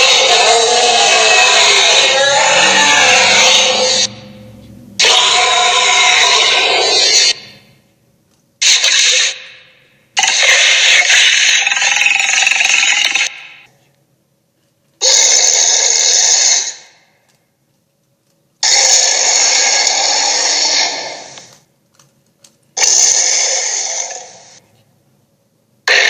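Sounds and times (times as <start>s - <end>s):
harsh rasping creature growls: 0.0s - 4.4s, 5.0s - 7.6s, 18.6s - 21.5s.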